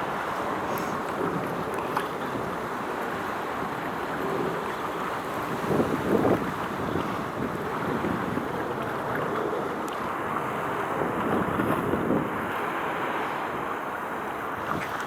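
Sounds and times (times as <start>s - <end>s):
sea water washing: 0.0s - 15.0s
wind buffeting microphone: 3.5s - 12.6s.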